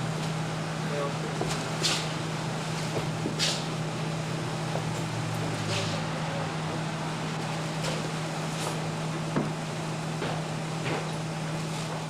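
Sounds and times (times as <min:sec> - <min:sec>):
machines humming: 0:02.2 - 0:11.5.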